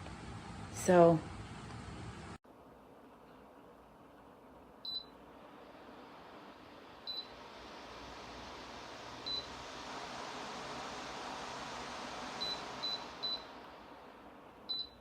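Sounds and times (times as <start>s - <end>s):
fan airflow rush: 0.0s - 3.2s, 3.8s - 15.0s
tower fan beeping: 4.8s - 5.2s, 7.0s - 7.4s, 9.2s - 9.8s, 12.1s - 13.7s, 14.7s - 15.0s.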